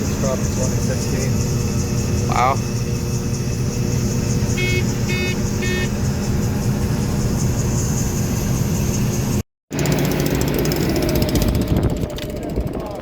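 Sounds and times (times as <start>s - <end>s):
combine engine drone: 0.0s - 13.0s
short electronic beeps: 4.6s - 5.9s.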